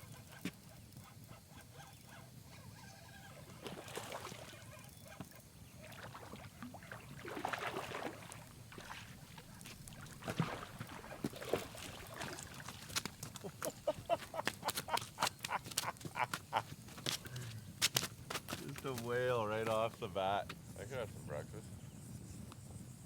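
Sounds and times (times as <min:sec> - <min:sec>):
fish splashing in water: 0:03.5 - 0:19.1.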